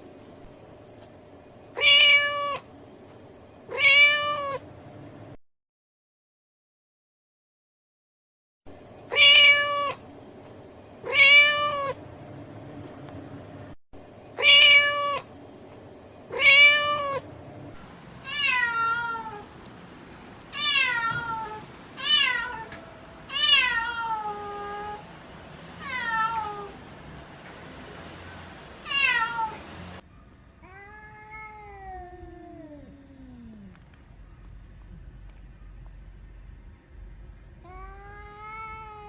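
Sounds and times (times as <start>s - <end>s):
cat meowing: 1.8s - 2.7s, 3.7s - 4.6s, 9.1s - 10.0s, 11.0s - 12.0s, 14.4s - 15.3s, 16.3s - 17.2s, 18.2s - 19.5s, 20.5s - 25.0s, 25.8s - 26.8s, 28.8s - 29.6s, 30.6s - 33.7s, 37.6s - 39.0s.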